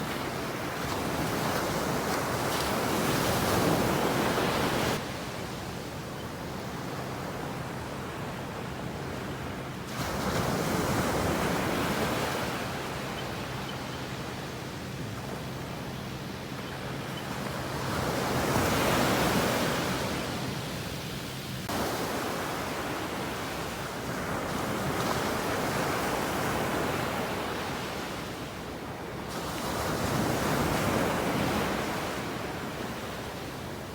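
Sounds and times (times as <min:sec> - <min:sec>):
ocean waves breaking on beach: 0:00.0 - 0:33.9.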